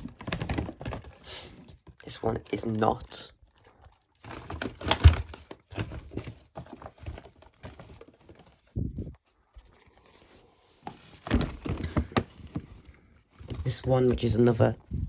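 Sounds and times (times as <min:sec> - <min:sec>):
packaging rustling and knocks: 0:00.0 - 0:02.0, 0:04.2 - 0:08.7, 0:10.8 - 0:14.4.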